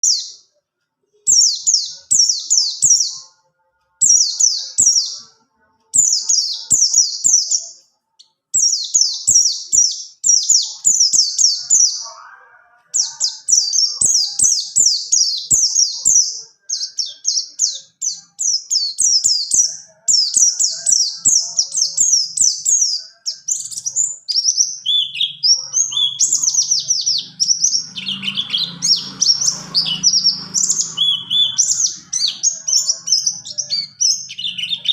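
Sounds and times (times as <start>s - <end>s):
bird singing trills: 0.0s - 34.9s.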